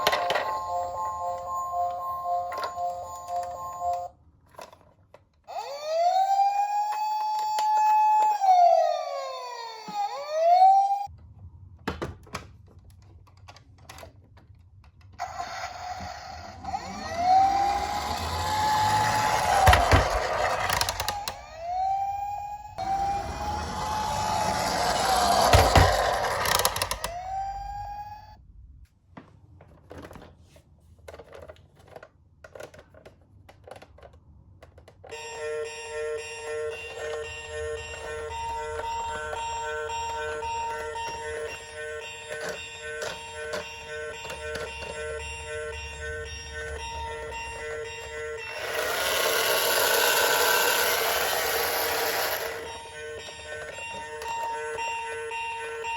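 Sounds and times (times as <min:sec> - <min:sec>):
toy siren wailing: 0:05.5 - 0:11.1, 0:15.2 - 0:28.4, 0:35.1 - 0:55.9.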